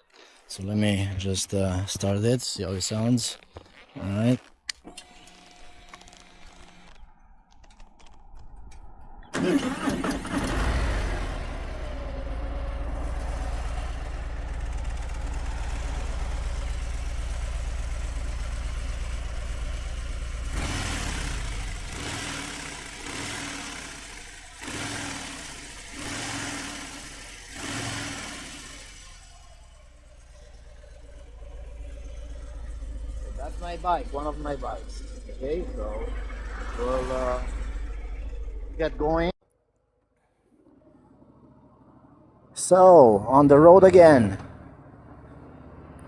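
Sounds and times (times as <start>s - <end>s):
motorcycle engine starting and idling: 2.8s - 8.6s, 9.3s - 39.4s
motorcycle engine revving: 9.4s - 39.4s.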